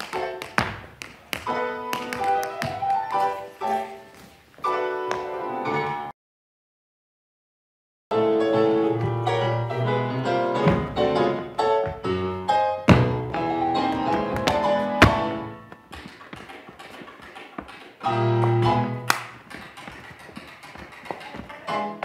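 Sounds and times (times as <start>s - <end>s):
upbeat band music with piano: 8.1s - 15.9s, 18.0s - 20.2s.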